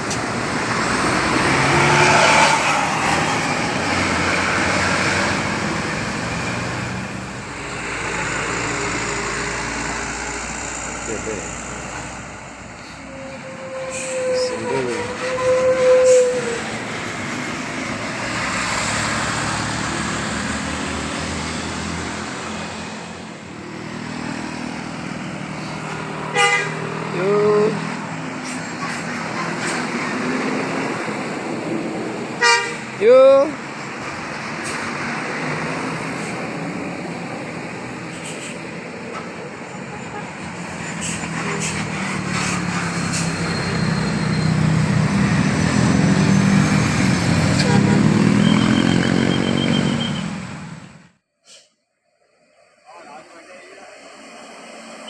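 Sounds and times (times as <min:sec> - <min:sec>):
engine drone: 0:00.0 - 0:13.3
bus passing by: 0:00.0 - 0:51.6, 0:52.2 - 0:55.0
musical bus horn: 0:13.1 - 0:16.7, 0:26.3 - 0:26.8, 0:32.4 - 0:33.0, 0:47.5 - 0:50.4
short hisses: 0:51.4 - 0:51.8.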